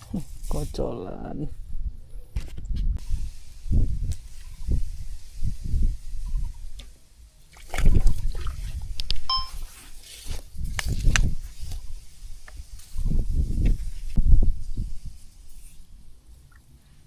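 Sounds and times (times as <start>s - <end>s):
water sloshing and splashing: 7.5s - 9.3s
short high chirp: 9.3s - 9.7s.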